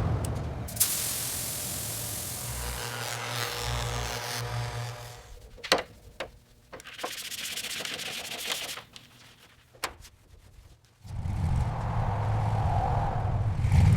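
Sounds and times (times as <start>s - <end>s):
hissing: 0.7s - 9.4s
sharp clicks and knocks: 5.4s - 10.0s.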